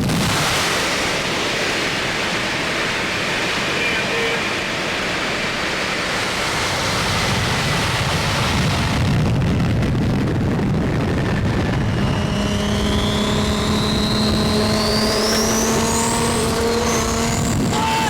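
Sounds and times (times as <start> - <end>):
wind and road noise: 0.0 - 18.0
car engine: 10.5 - 18.0
thin high whine: 11.3 - 18.0.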